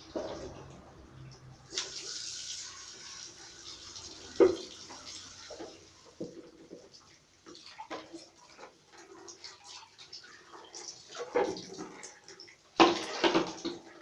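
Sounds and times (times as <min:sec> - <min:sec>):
water splashing and running: 0:00.0 - 0:14.0.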